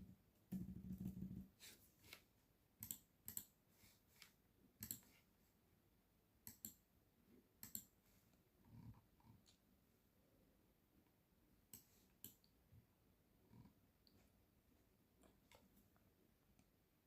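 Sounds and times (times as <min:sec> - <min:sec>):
keyboard and mouse clicks: 0:02.8 - 0:03.5, 0:04.2 - 0:05.1, 0:06.4 - 0:06.8, 0:07.6 - 0:08.0.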